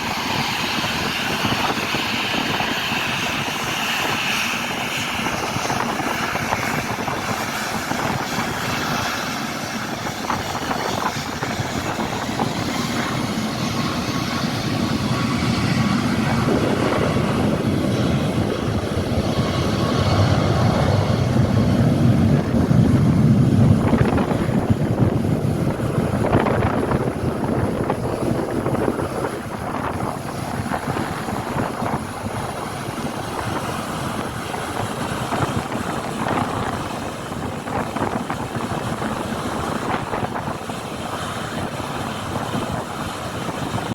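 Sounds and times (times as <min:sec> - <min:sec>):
jet airliner engines passing: 0:00.0 - 0:43.9.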